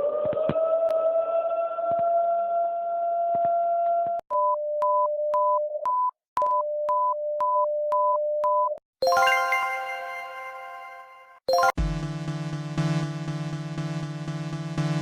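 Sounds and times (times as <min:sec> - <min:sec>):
bright chime-like chord: 0:09.0 - 0:11.8.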